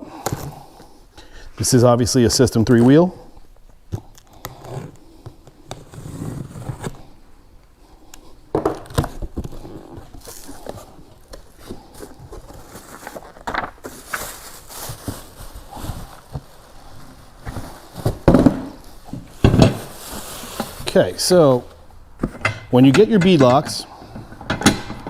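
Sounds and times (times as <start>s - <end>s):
packaging rustling and crinkling: 8.4s - 21.8s.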